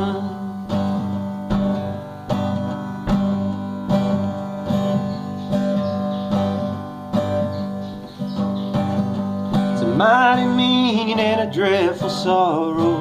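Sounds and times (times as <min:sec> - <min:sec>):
person singing: 0:00.0 - 0:01.3, 0:09.6 - 0:13.0
acoustic guitar strumming: 0:00.0 - 0:13.0.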